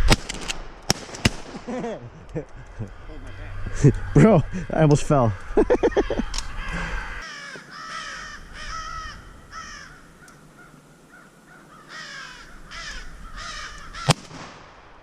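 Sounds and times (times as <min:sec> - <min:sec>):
crows cawing: 0:02.6 - 0:14.2.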